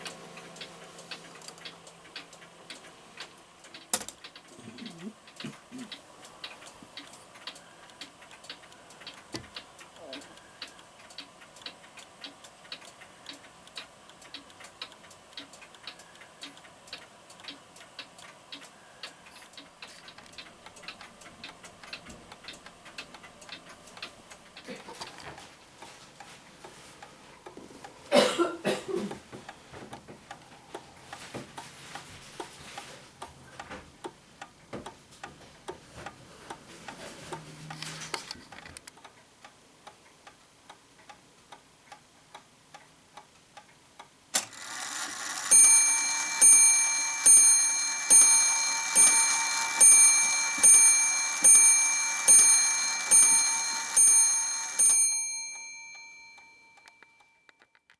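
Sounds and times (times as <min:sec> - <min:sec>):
clock ticking: 0:00.0 - 0:37.9, 0:38.8 - 0:57.6
clock movement clatter: 0:44.4 - 0:57.9.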